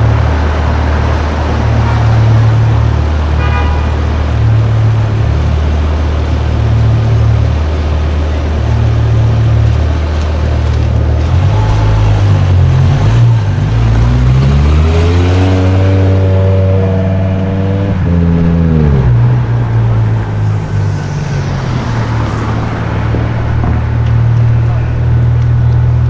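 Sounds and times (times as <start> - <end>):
car engine idling and revving: 0.0 - 26.0.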